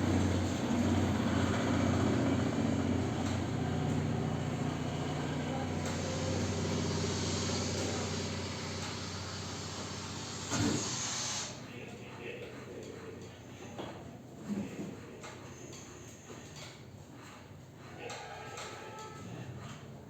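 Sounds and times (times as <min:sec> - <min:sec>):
motor humming: 0:00.0 - 0:11.6.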